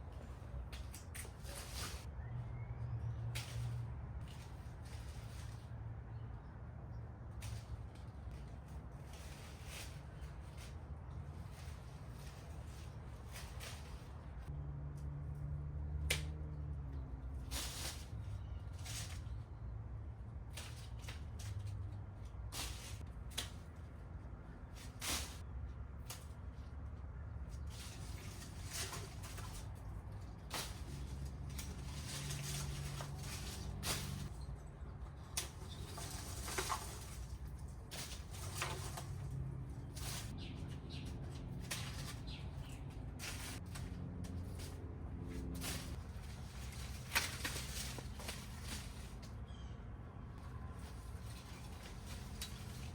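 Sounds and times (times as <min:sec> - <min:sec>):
leafy branches rustling: 0:00.0 - 0:52.9
low outdoor rumble: 0:00.0 - 0:52.9.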